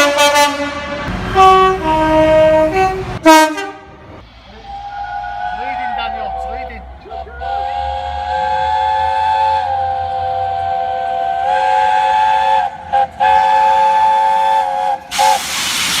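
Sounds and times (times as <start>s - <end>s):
multi-note train horn: 0.0s - 15.4s
rush of hiss: 15.1s - 16.0s.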